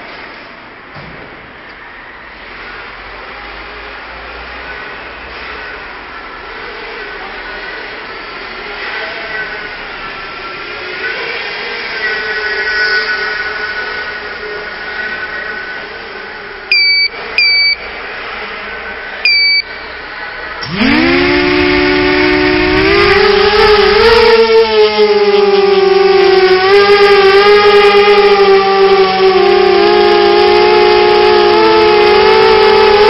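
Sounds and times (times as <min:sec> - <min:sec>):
short sharp beeps: 0:16.7 - 0:17.9, 0:19.2 - 0:19.7
quadcopter motors whining: 0:20.6 - 0:33.0.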